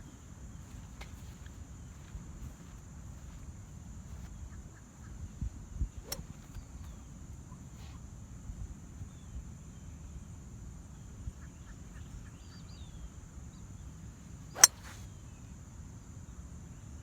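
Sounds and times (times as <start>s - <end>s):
high insect hiss: 0.0s - 11.4s, 12.7s - 15.6s
wind rumbling on microphone: 3.5s - 6.9s
golf club striking ball: 14.6s - 15.0s.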